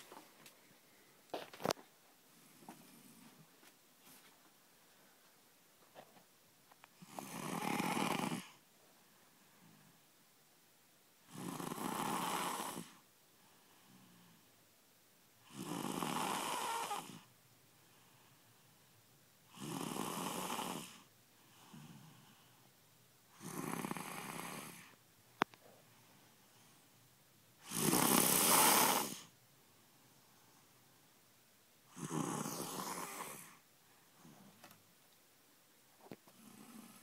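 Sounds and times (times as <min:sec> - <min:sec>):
loud snoring: 0:07.0 - 0:08.6, 0:11.2 - 0:13.0, 0:15.4 - 0:17.3, 0:19.5 - 0:22.3, 0:23.3 - 0:24.9, 0:27.6 - 0:29.3, 0:31.9 - 0:33.6, 0:36.4 - 0:37.0.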